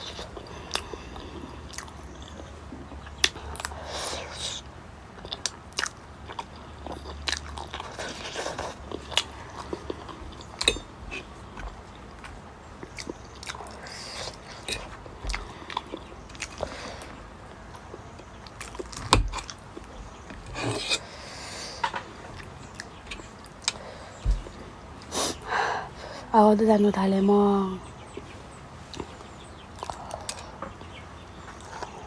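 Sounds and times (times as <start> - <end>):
crunchy bites and chewing: 0.0 - 21.1.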